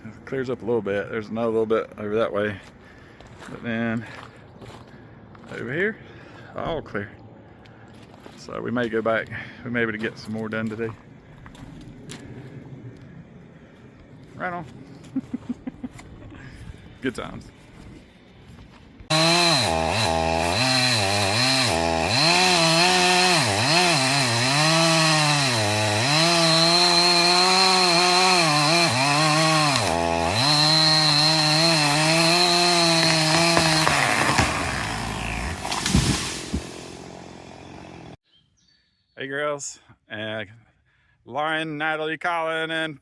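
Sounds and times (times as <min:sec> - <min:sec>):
chainsaw running at high revs: 0:19.1 - 0:38.2.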